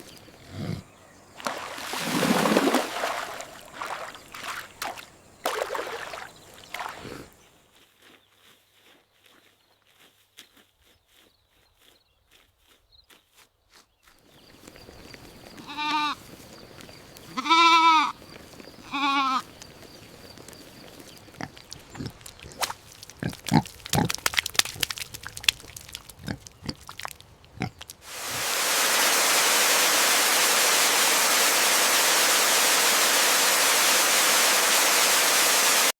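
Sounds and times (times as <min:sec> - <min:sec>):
goat bleating: 0:15.6 - 0:16.3, 0:17.2 - 0:18.2, 0:18.8 - 0:19.5
loud static hiss: 0:28.1 - 0:35.9.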